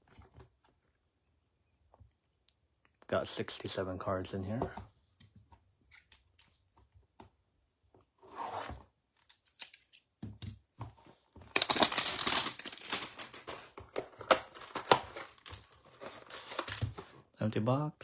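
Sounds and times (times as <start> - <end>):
cardboard and plastic tearing: 11.4 - 17.3
wrapper crackling rustles: 11.5 - 13.7.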